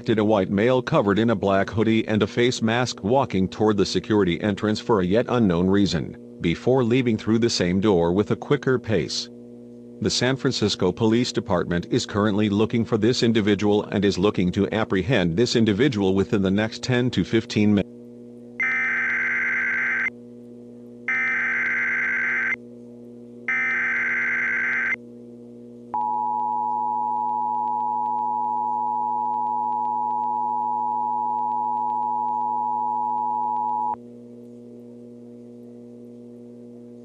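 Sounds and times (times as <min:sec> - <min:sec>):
low steady hum: 0:00.0 - 0:37.0
digital data bursts: 0:18.6 - 0:20.1, 0:21.1 - 0:22.6, 0:23.5 - 0:25.0
two-tone attention signal: 0:18.6 - 0:20.1, 0:21.1 - 0:22.6, 0:23.5 - 0:25.0.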